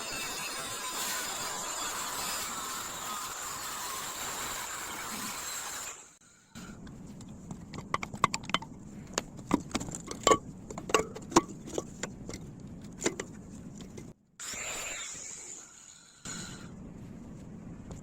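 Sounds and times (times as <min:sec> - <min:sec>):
steady low hum: 0:06.2 - 0:14.4, 0:16.1 - 0:18.0.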